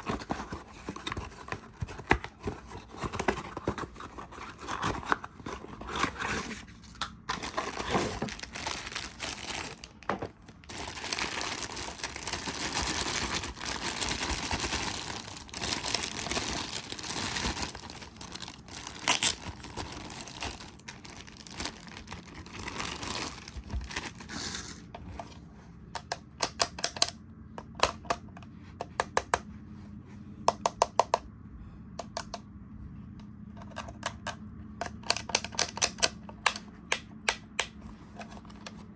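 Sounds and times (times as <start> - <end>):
plastic packaging crinkling and tearing: 0.0 - 24.9.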